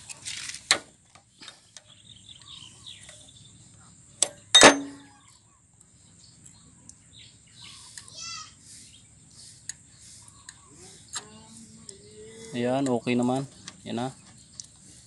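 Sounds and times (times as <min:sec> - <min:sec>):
loud ringing metallic clang: 0:04.5 - 0:05.2.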